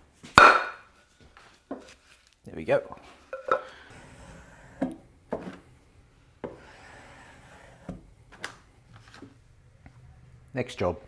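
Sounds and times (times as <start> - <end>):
clamp knocking against wood: 0.4 - 0.8
clamp scraping slide: 3.0 - 10.4.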